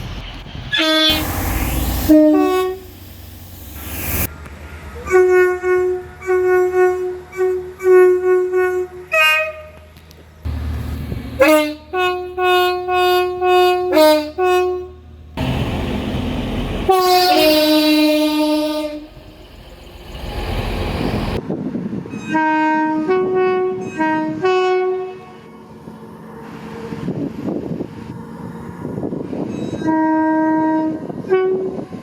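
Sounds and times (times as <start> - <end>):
loud rushing noise: 0.0 - 4.8
locomotive air horn blasts: 0.7 - 3.1, 5.0 - 10.0, 11.4 - 15.1, 16.9 - 19.2, 22.3 - 25.5, 29.8 - 31.9.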